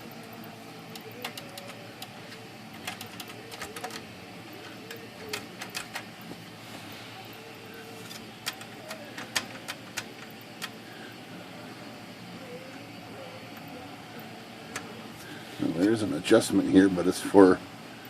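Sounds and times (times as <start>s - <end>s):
steady background noise: 0.0s - 18.0s
typewriter parts clicking: 5.2s - 6.1s.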